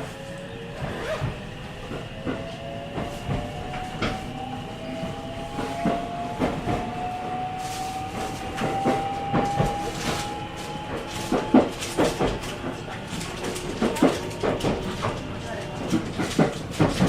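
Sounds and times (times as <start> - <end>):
electric train inverter whine: 0.0 - 17.0
train running rumble: 0.0 - 17.0
wheels knocking on rail joints: 8.2 - 17.0.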